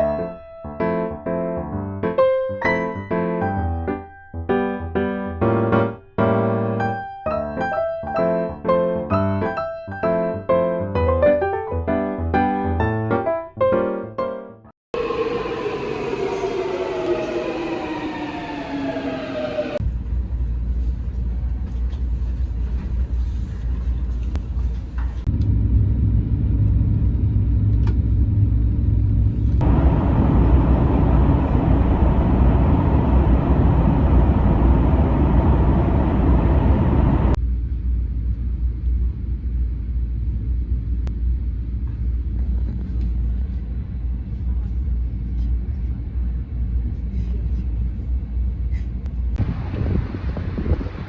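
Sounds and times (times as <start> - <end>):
moving vehicle rumble: 15.0 - 51.0.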